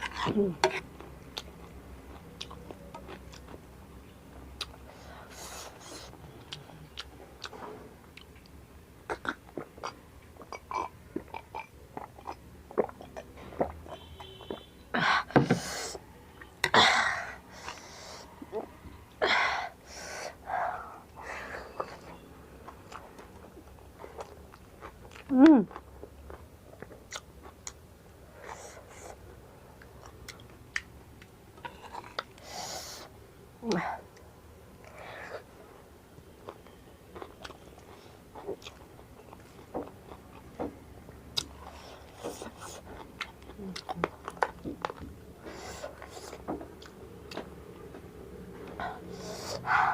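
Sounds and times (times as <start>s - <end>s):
wet chewing clicks and smacks: 0.9s - 3.6s, 6.1s - 14.7s, 21.7s - 27.8s, 29.8s - 32.4s, 36.4s - 45.3s, 46.0s - 48.9s
loud sharp breaths: 48.8s - 49.9s.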